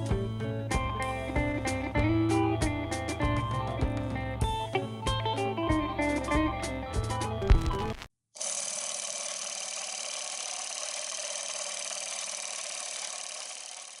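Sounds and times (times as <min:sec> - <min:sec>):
guitar music: 0:00.0 - 0:07.9
film projector whirring clatter: 0:08.4 - 0:14.0.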